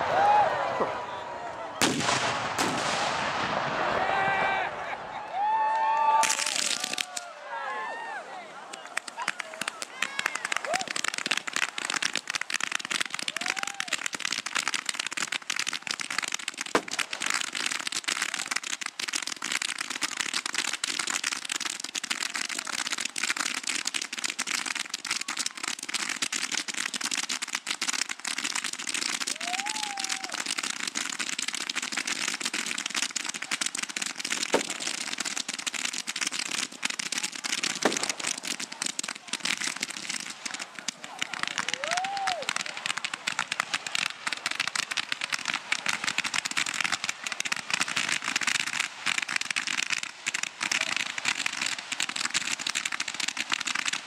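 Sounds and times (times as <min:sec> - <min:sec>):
sharp firework bangs: 0:01.8 - 0:04.0, 0:16.6 - 0:17.6, 0:34.2 - 0:40.9
fireworks crackling: 0:01.8 - 0:07.3, 0:07.9 - 0:54.0.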